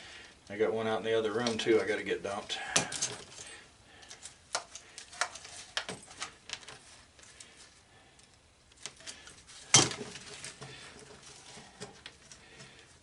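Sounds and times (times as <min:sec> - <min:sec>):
scrap metal clinking: 0:01.4 - 0:06.4.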